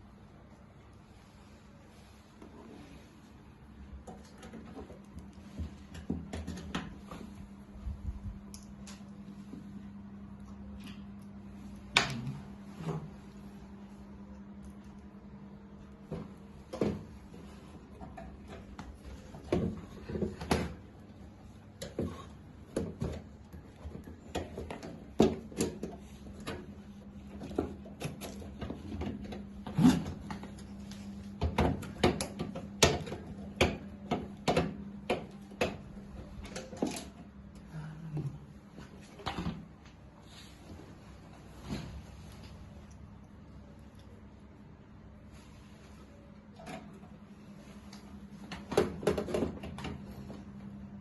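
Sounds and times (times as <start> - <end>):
low steady hum: 0.0 - 51.0.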